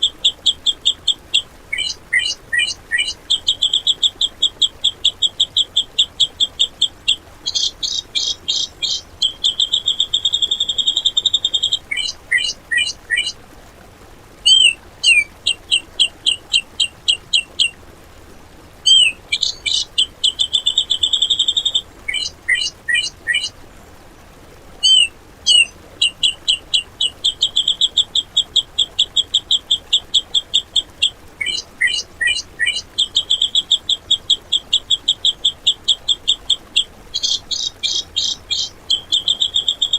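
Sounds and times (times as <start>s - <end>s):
bird chattering: 0.0s - 13.4s, 14.5s - 17.8s, 18.8s - 23.5s, 24.8s - 39.9s
bird singing harsh rapid notes: 0.0s - 13.4s, 14.4s - 17.8s, 18.8s - 23.5s, 24.8s - 39.9s.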